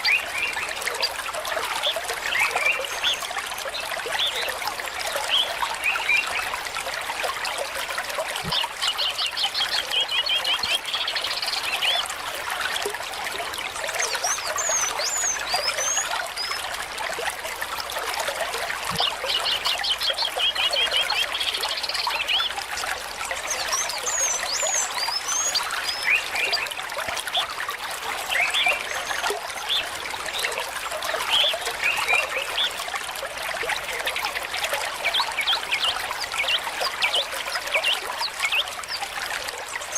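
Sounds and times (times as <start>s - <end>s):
water trickling: 0.0s - 39.9s
birds chirping and trilling: 23.4s - 26.7s.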